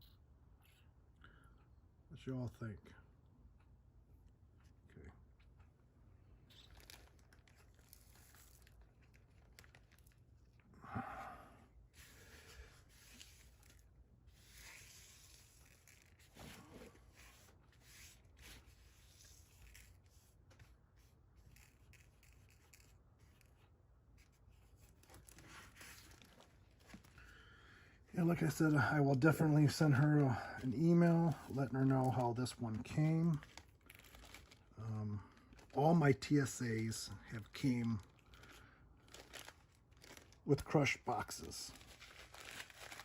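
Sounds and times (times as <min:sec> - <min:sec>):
packaging rustling: 0:06.6 - 0:10.6, 0:12.0 - 0:20.7, 0:24.2 - 0:27.5, 0:29.4 - 0:43.0.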